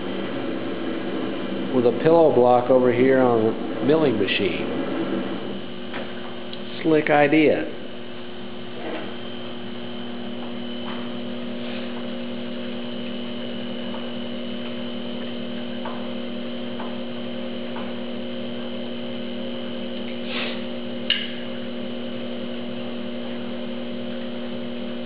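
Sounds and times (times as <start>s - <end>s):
metal lathe motor humming: 0.0s - 25.0s
brief scrape: 20.2s - 20.6s.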